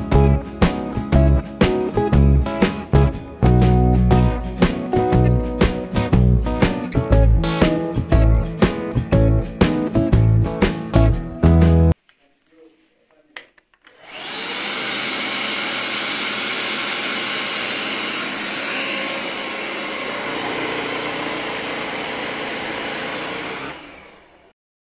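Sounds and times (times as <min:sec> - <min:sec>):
vacuum motor whining: 0:13.9 - 0:24.5.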